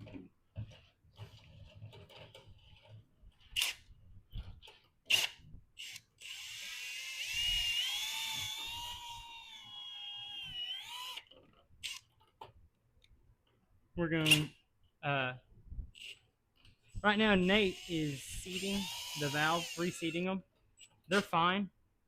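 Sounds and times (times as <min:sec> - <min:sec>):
drill whining: 0:05.1 - 0:12.1, 0:17.3 - 0:20.2.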